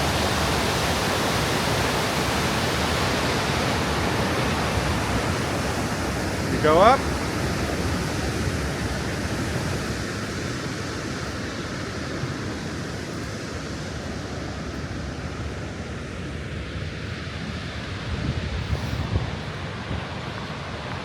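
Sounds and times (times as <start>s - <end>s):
waterfall rushing: 0.0s - 18.0s.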